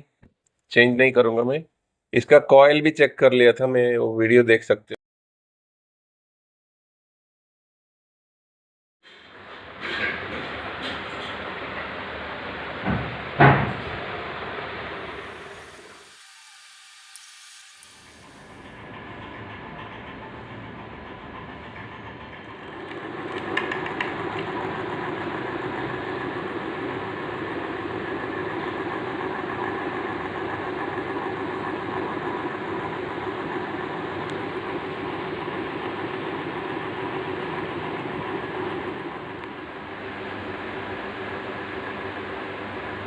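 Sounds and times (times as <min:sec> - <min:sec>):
ceiling fan whirring: 0:09.2 - 0:43.0
fan clicks: 0:22.7 - 0:24.6.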